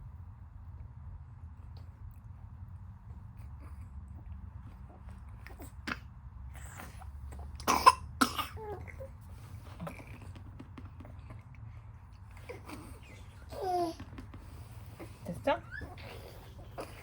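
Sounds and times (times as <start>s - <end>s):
person coughing: 7.6s - 8.6s.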